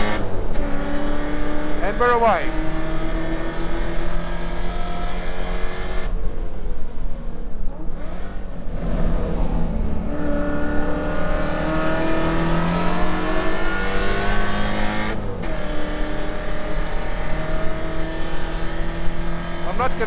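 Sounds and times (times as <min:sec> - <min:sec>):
race car engine accelerating: 0:00.0 - 0:20.0.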